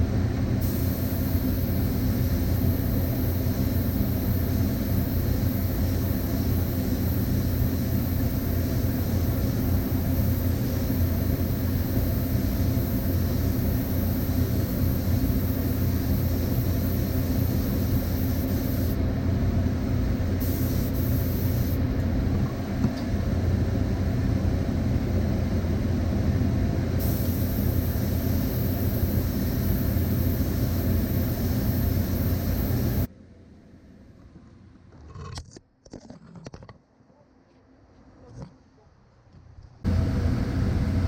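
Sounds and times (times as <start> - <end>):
air compressor motor hum: 0.0 - 33.1, 39.8 - 41.0
spray gun hissing: 0.6 - 19.0, 20.3 - 21.8, 27.0 - 33.1.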